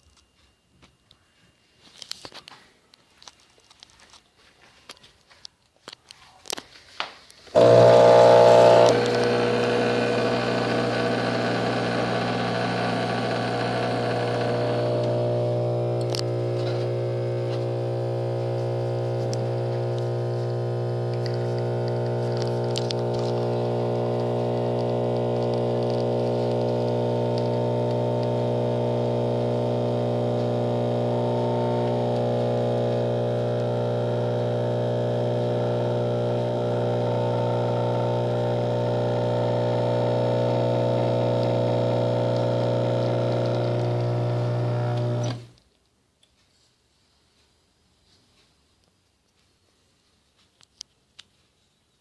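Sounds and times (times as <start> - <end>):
espresso machine pump humming: 7.5 - 45.6.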